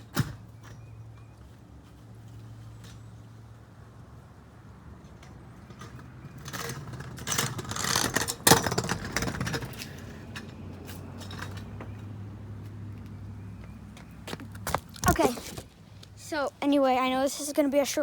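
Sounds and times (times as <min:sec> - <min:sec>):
scooter wheels rolling on pavement: 0:00.0 - 0:18.0.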